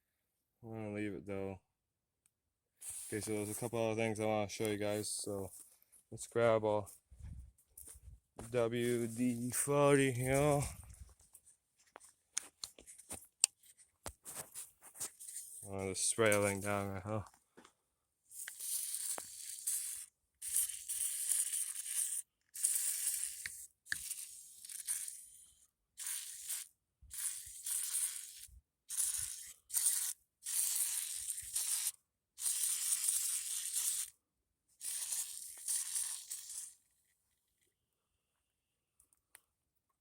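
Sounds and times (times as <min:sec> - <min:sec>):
aerosol can spraying: 0:02.8 - 0:03.7, 0:18.3 - 0:25.4, 0:26.0 - 0:34.2, 0:34.8 - 0:36.8.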